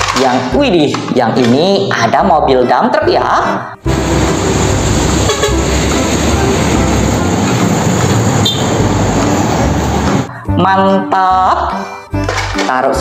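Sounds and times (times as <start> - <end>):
heavy vehicle rumbling and rattling: 3.8 - 10.4.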